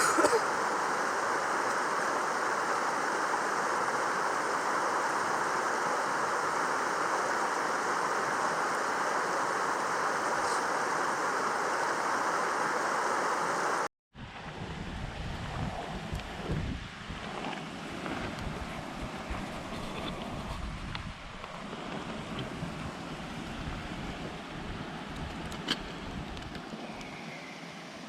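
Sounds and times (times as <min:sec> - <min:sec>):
stream water rushing: 0:00.0 - 0:13.9
wind rumble on microphone: 0:14.2 - 0:27.2.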